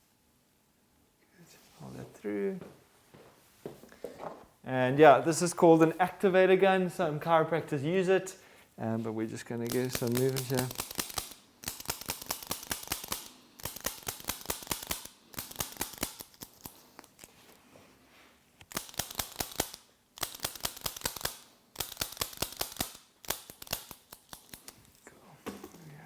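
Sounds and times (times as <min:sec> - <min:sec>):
activator gun clicking: 0:09.7 - 0:16.2.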